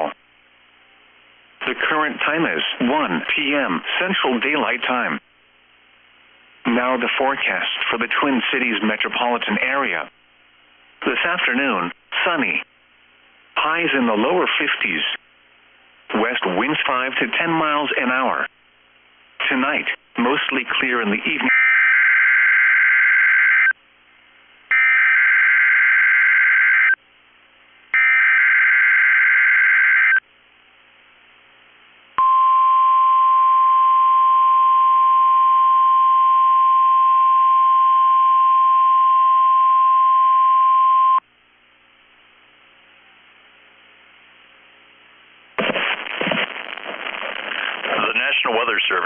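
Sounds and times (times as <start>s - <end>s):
faint radio hiss: 0.0s - 21.5s, 27.0s - 28.0s, 30.0s - 32.2s, 41.2s - 49.0s
announcer speaking: 1.6s - 5.2s, 19.4s - 21.6s, 48.0s - 49.0s
steady warning alarm tone: 24.7s - 27.0s, 28.0s - 30.2s.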